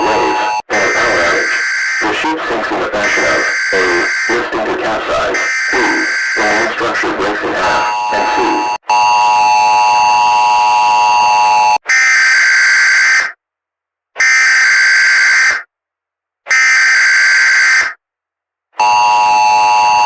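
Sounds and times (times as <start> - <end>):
two-tone attention signal: 0.0 - 2.4, 3.0 - 9.1
raspy data bursts: 0.0 - 8.8.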